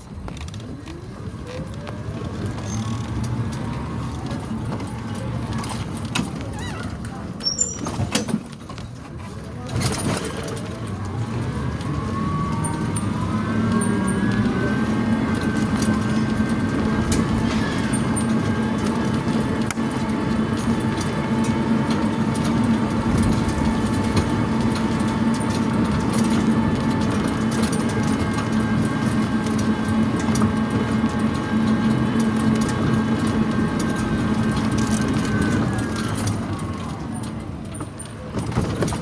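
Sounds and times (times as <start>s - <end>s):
tyre and road noise: 0.0s - 39.0s
electric motor whining: 10.9s - 37.4s.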